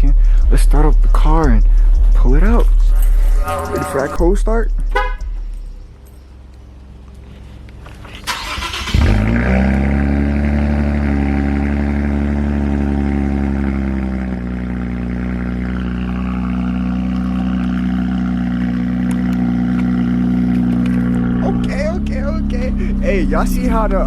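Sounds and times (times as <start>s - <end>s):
car engine idling: 0.0s - 24.0s
starter cranking: 8.1s - 9.4s.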